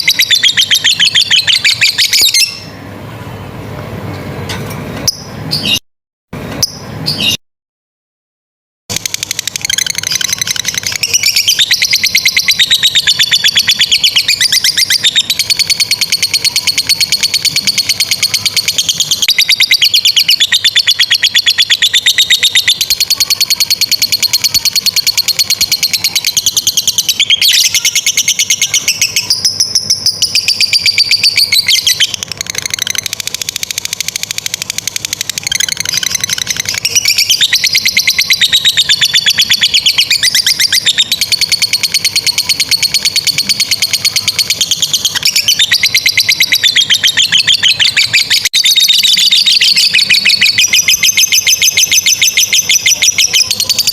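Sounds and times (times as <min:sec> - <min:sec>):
lovebird rattling trill: 0:30.0 - 0:53.9.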